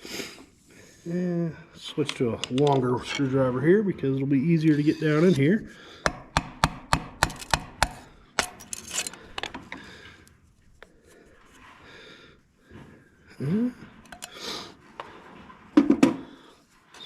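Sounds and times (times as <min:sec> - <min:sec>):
screwdriver clicking on metal: 0:06.8 - 0:09.6, 0:14.1 - 0:14.4
screwdriver scraping metal sleeve: 0:07.1 - 0:09.6, 0:14.0 - 0:14.4
person grunting: 0:13.4 - 0:13.8.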